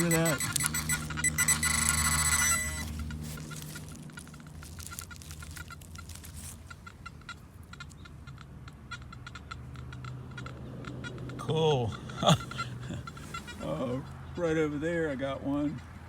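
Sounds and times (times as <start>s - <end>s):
clicks and handling noise: 0.0s - 11.4s
metal detector beeps: 0.0s - 14.0s.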